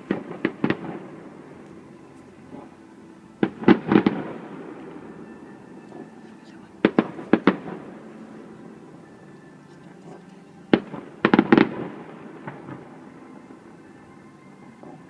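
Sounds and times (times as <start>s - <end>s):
fireworks bangs: 0.0s - 1.6s, 3.4s - 5.2s, 6.8s - 9.0s, 10.0s - 13.4s.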